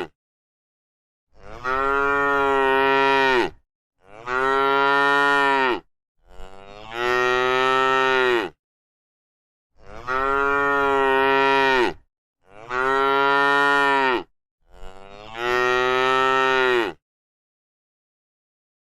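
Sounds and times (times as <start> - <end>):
cow mooing: 1.3 - 8.6, 9.8 - 17.0.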